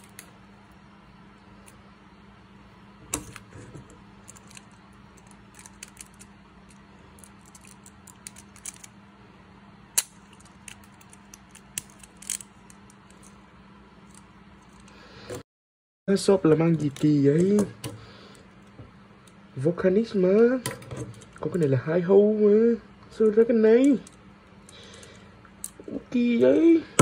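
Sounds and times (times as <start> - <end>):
low steady hum: 0.0 - 15.4, 16.1 - 27.0
plastic toy parts clicking: 4.3 - 8.9, 10.0 - 13.3.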